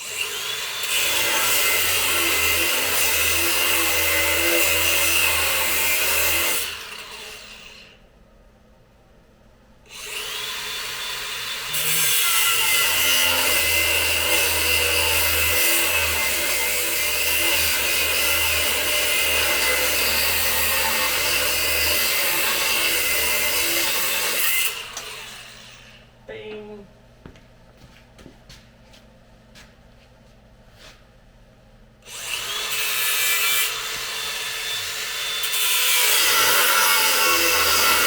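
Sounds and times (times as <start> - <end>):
power cutting tool whining: 9.9 - 25.9, 32.1 - 38.0.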